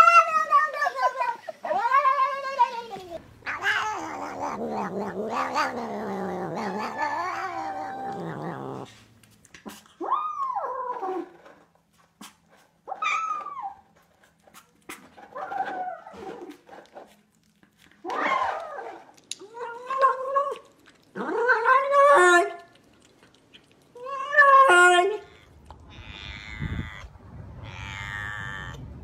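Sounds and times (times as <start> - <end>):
cat meowing and yowling: 0.0 - 1.2, 24.0 - 29.0.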